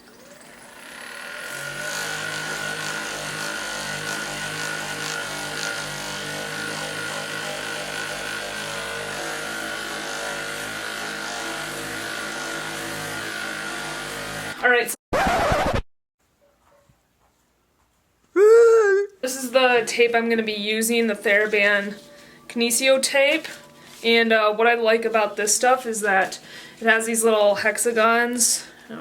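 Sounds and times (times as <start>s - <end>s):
massage gun motor buzz: 0.0s - 14.6s.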